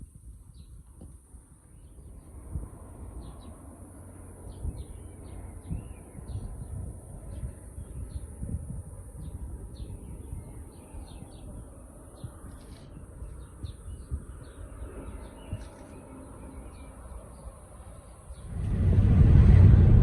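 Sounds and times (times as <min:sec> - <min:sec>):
small birds chirping: 0:04.5 - 0:08.6, 0:09.2 - 0:18.6
low uneven rumble: 0:18.3 - 0:20.0.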